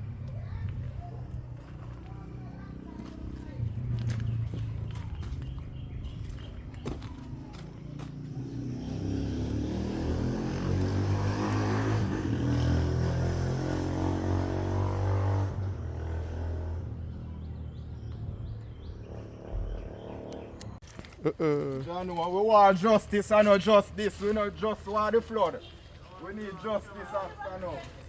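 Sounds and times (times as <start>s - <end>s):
vehicle engine running: 0.0s - 20.8s.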